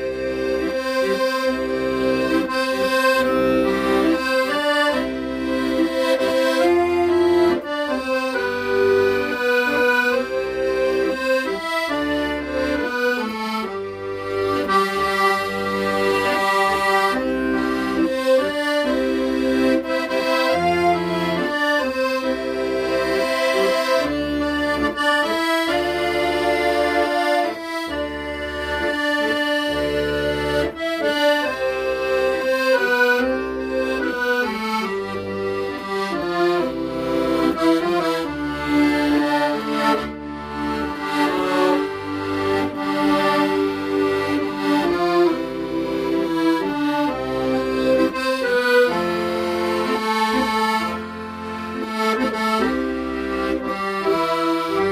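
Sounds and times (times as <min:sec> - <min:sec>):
solo accordion ballad: 0:00.0 - 0:54.9.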